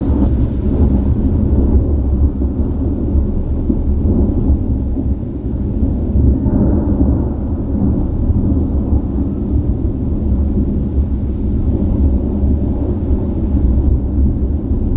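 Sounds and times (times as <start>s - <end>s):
continuous rumbling thunder: 0.0s - 14.9s.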